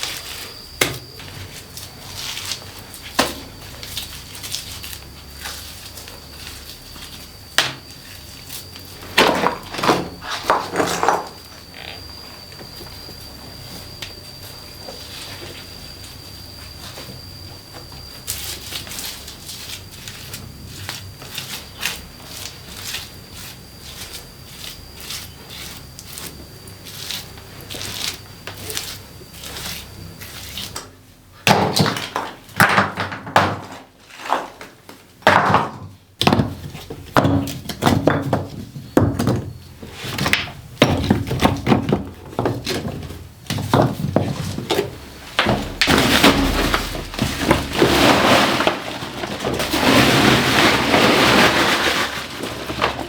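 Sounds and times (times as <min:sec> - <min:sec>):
heavy thuds of wood on wood: 0:43.5 - 0:48.7.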